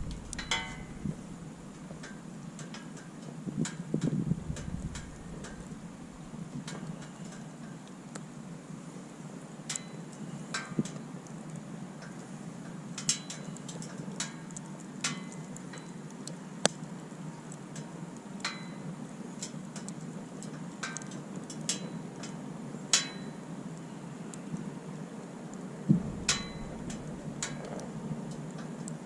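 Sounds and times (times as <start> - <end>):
steady low rushing sound: 0.0 - 2.0, 4.2 - 6.3, 25.9 - 27.4
campfire crackling and popping: 0.0 - 8.5, 9.4 - 29.0.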